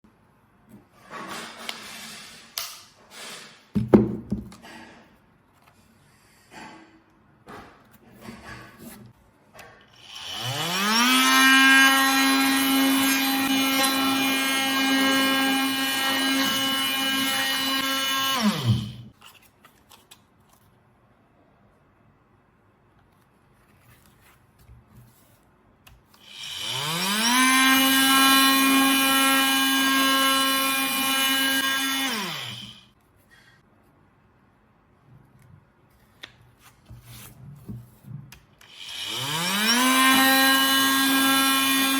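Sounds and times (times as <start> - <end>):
oscillating multi-tool sanding wood: 10.0 - 19.0, 26.2 - 32.9, 38.7 - 41.9.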